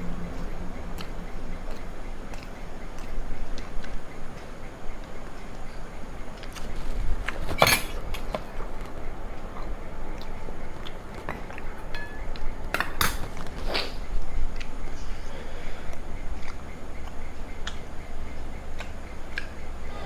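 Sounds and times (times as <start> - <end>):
cutlery clinking on a plate: 6.6 - 8.6, 11.1 - 13.7.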